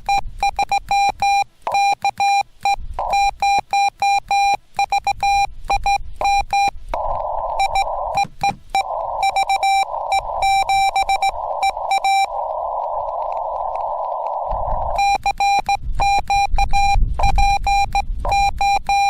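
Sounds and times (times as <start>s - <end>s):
morse code beeps: 0.0s - 19.0s
radio receiver hiss: 4.5s - 19.0s.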